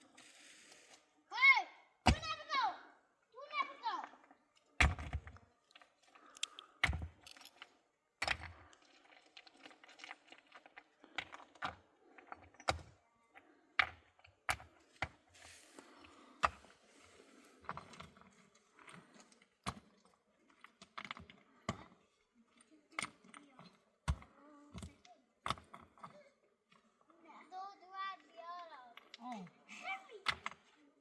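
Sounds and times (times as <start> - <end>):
hard objects clattering: 4.7 - 16.7.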